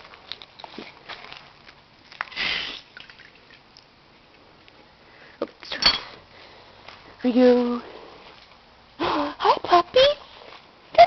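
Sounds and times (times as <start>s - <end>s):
breathy sniff: 2.3s - 2.8s.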